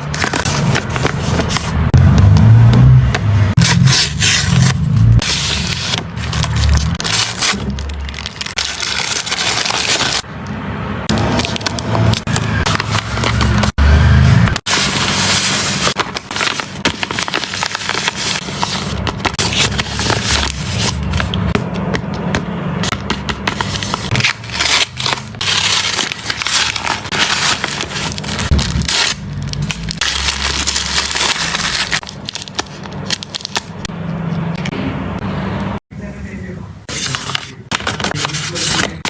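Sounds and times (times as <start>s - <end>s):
plastic packaging crinkling: 0.0s - 1.8s, 3.8s - 10.3s, 11.1s - 13.8s, 14.6s - 21.4s, 23.5s - 33.9s.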